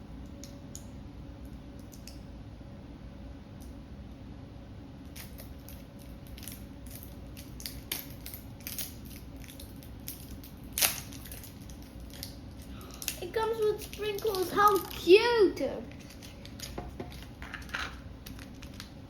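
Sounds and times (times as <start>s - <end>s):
plastic packaging crinkling: 5.1s - 19.0s.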